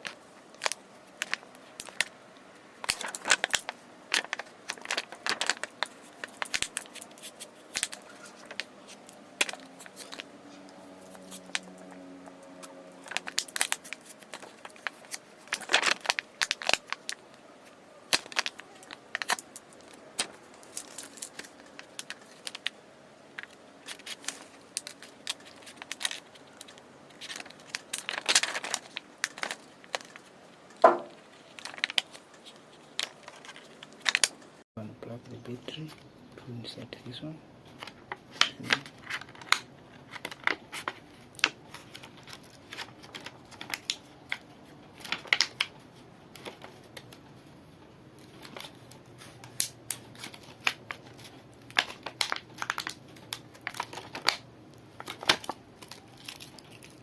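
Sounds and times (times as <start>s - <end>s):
adhesive crackling and tearing: 2.8s - 34.5s, 48.2s - 57.0s.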